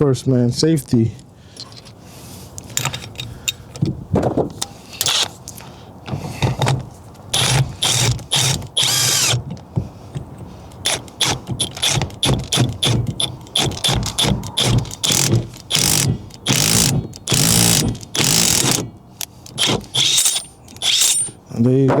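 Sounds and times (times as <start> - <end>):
ratchet wrench clicking: 10.8 - 21.4.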